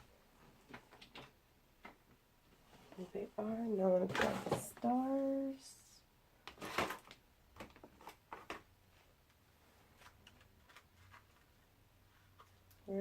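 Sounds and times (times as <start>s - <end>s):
craft supplies clicking and rustling: 4.0s - 4.9s.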